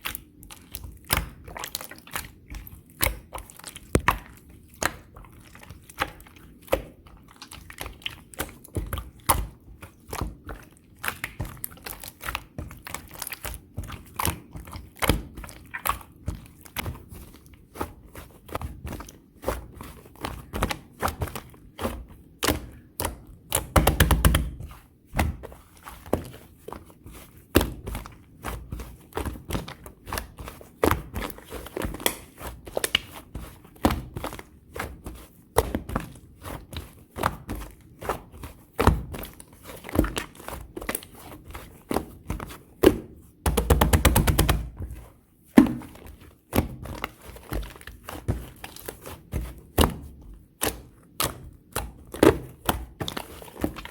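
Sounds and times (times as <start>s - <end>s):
slime pressed by hand: 42.0s - 44.8s, 45.6s - 53.8s.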